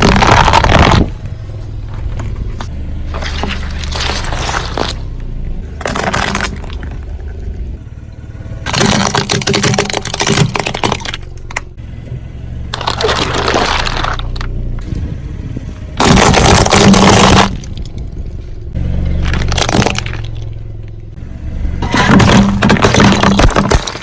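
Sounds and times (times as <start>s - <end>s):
tyre crushing brittle objects: 0.0s - 1.2s, 3.1s - 5.1s, 5.8s - 7.1s, 8.7s - 11.6s, 12.7s - 14.5s, 16.0s - 17.9s, 19.2s - 20.5s, 21.8s - 24.0s
car engine humming low: 1.0s - 8.8s, 11.0s - 16.0s, 17.4s - 22.7s.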